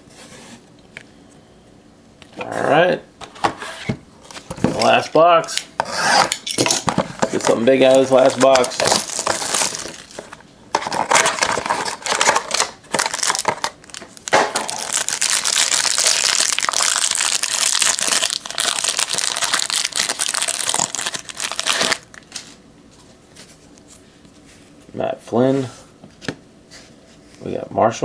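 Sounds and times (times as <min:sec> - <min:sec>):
wrapper crinkling and tearing: 0:07.4 - 0:22.5.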